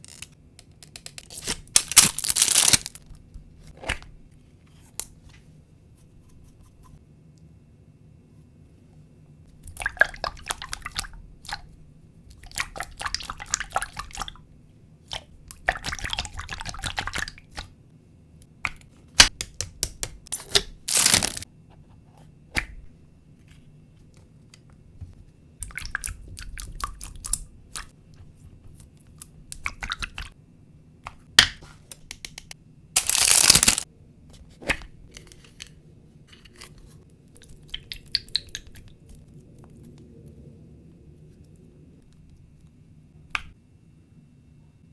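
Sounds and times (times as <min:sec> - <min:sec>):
squishy toy squelching: 0:01.2 - 0:03.0, 0:20.9 - 0:21.4, 0:33.0 - 0:33.8.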